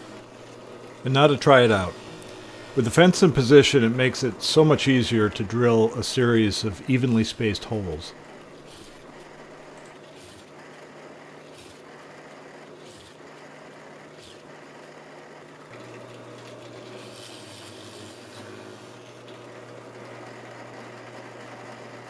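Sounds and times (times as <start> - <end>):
drill bit cutting wood: 0.0 - 5.2, 8.1 - 15.3, 16.8 - 19.4
drill press motor humming: 0.0 - 22.0.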